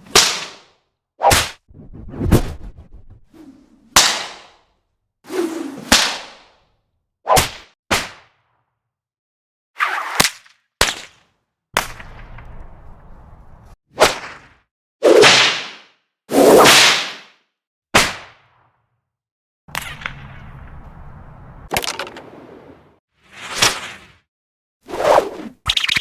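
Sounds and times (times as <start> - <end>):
whip cracks: 0.1 - 1.6, 4.0 - 4.6, 5.8 - 6.5, 7.3 - 8.4, 10.0 - 11.2, 14.0 - 15.9, 16.5 - 17.3, 18.0 - 18.4
whip lash swishing: 0.1 - 4.6, 5.8 - 6.4, 7.3 - 8.2.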